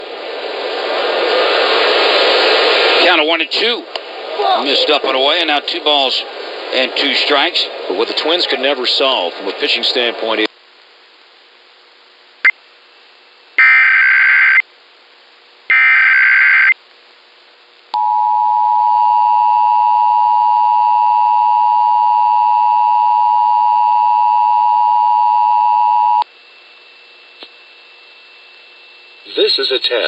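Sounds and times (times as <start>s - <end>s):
digital data bursts: 13.6s - 14.6s, 15.7s - 16.8s
two-tone attention signal: 13.6s - 14.6s, 15.7s - 16.8s
click: 27.0s - 27.6s.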